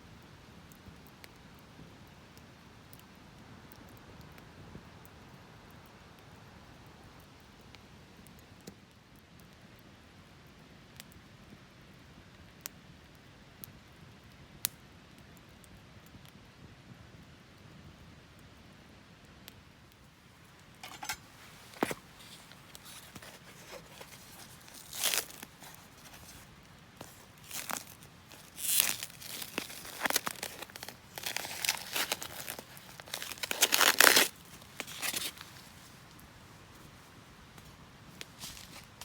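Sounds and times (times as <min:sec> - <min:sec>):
wrapper crinkling and tearing: 0:20.8 - 0:36.9, 0:38.1 - 0:39.0.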